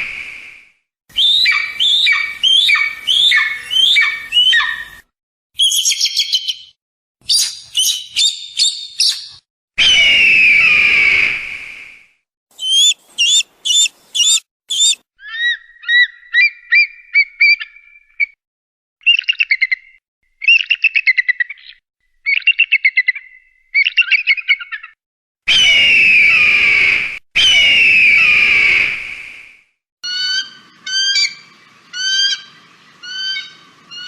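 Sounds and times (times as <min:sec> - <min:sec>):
kite whistled calls: 0:00.0 - 0:05.0, 0:09.8 - 0:15.0
background noise: 0:10.3 - 0:15.0.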